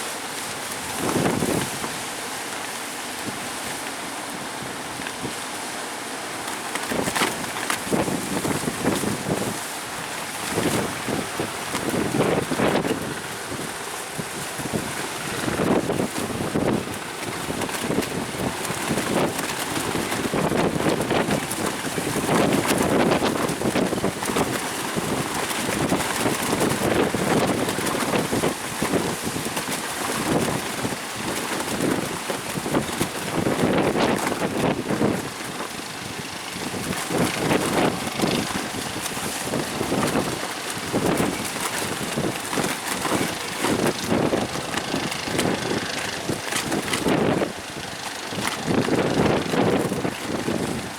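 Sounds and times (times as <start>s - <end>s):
gusty wind buffeting microphone: 0.0s - 2.4s, 6.3s - 50.9s
high surf: 0.0s - 50.9s.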